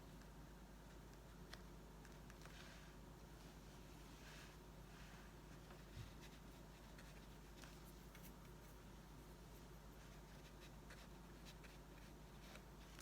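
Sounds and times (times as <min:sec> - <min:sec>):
low room hum: 0:00.0 - 0:13.0
brush dabbing on paper: 0:04.2 - 0:13.0.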